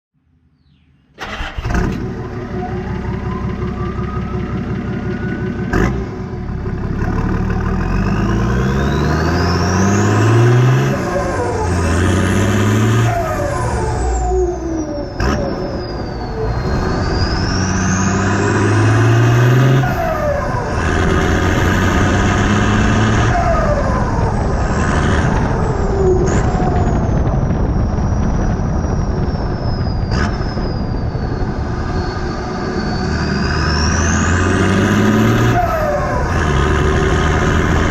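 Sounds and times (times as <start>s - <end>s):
diesel engine running: 1.2s - 37.9s
turbo whistling: 13.1s - 21.2s, 25.8s - 34.5s.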